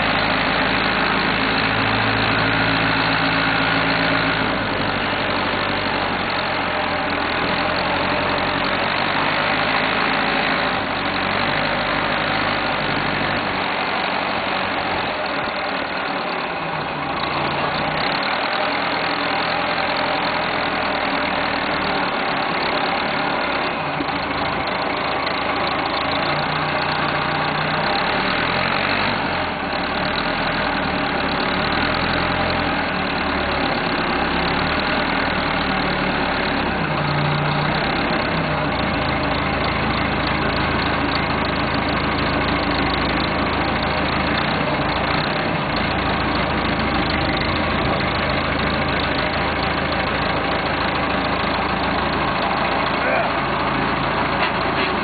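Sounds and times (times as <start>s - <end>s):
backhoe engine running: 0.0s - 55.0s.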